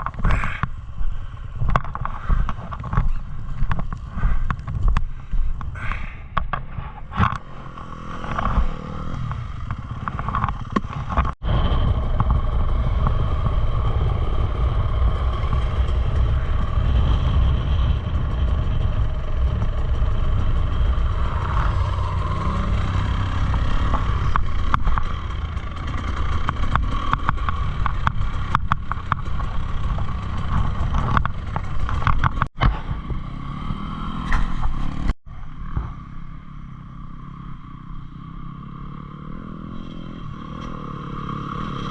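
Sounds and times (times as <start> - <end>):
bike clattering over rough ground: 0.0 - 11.4, 23.4 - 32.9
dirt bike engine: 0.0 - 41.9.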